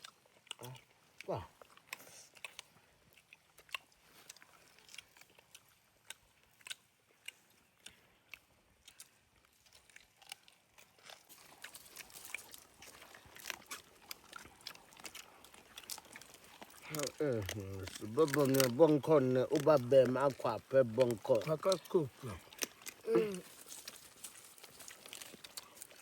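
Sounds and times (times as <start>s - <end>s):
person chewing crunchy food: 0.0s - 26.0s.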